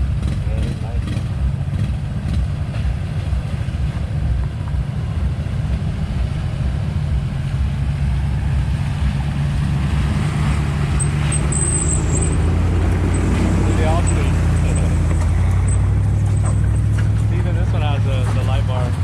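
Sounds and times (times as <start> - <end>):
truck engine running: 0.0 - 19.0.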